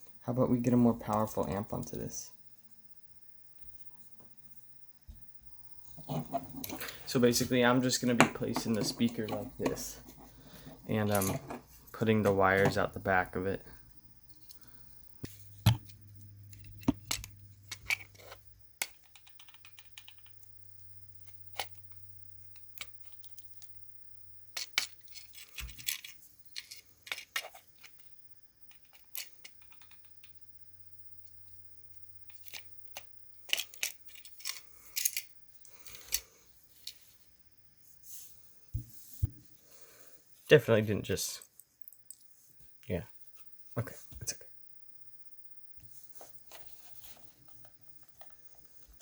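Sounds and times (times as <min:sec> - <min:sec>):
plastic parts and wires handled: 0:05.1 - 0:23.8, 0:24.4 - 0:30.5, 0:31.2 - 0:39.6, 0:45.8 - 0:49.0.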